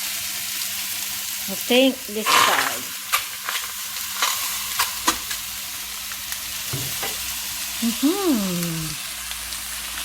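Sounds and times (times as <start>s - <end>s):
chicken sizzling in a skillet: 0.0s - 10.0s.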